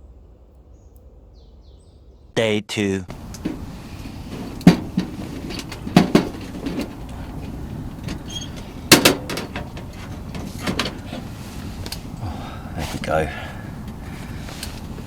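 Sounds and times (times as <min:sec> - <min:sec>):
low background noise: 0:00.0 - 0:15.0
knocks and clatters of handling: 0:03.1 - 0:12.2.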